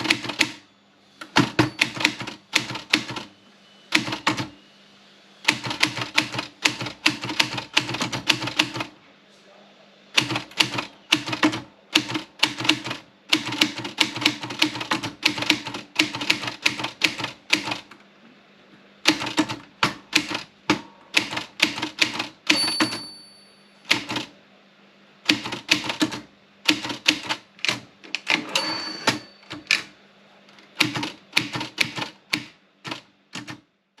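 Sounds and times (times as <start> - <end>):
typewriter carriage return: 0.0 - 0.6, 1.2 - 3.3, 3.9 - 4.5, 5.5 - 8.9, 10.2 - 17.9, 19.1 - 23.1, 25.3 - 29.9, 30.5 - 33.6
typewriter key strikes: 1.2 - 3.2, 19.1 - 23.1, 25.3 - 29.9, 30.8 - 33.6
typewriter bell ringing: 1.4 - 2.3, 22.5 - 23.7, 28.4 - 29.7.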